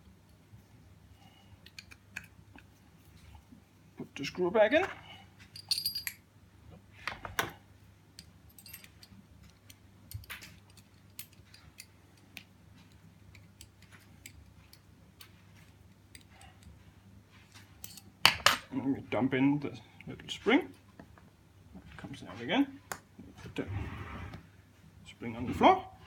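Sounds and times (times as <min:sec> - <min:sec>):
metallic clicks of padlock parts: 0:01.6 - 0:02.6, 0:05.5 - 0:06.2, 0:08.2 - 0:16.8.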